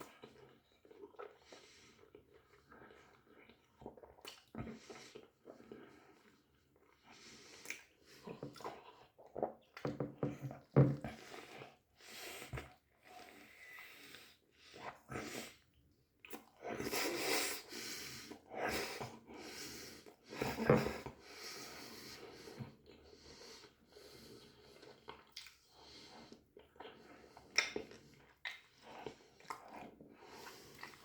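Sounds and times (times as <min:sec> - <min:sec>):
breathing: 0:11.1 - 0:14.8, 0:17.0 - 0:24.9, 0:25.7 - 0:26.4, 0:30.1 - 0:31.0
person chewing: 0:24.3 - 0:31.0.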